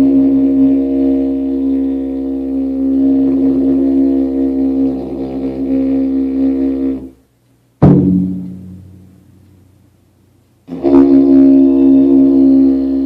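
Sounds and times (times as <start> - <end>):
didgeridoo drone: 0.0 - 7.2, 10.7 - 13.0
large drum boom: 7.8 - 9.4.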